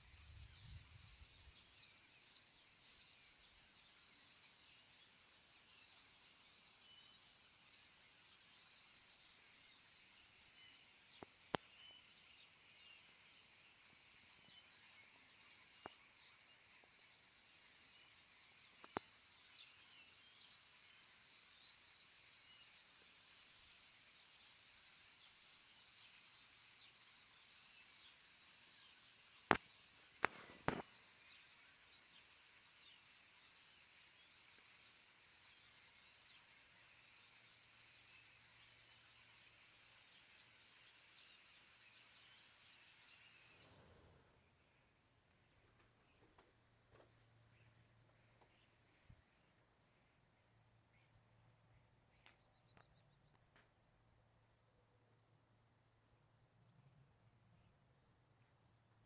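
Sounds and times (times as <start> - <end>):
small birds chirping: 0.0 - 58.6
sharp clicks: 30.2 - 30.8.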